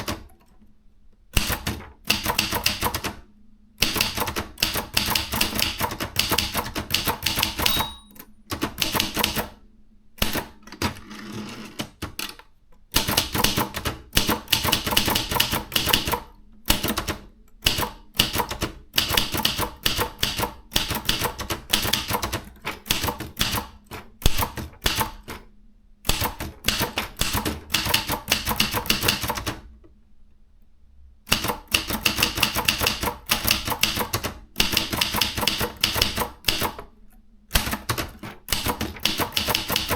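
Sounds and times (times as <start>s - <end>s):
typewriter key strikes: 7.0s - 8.2s.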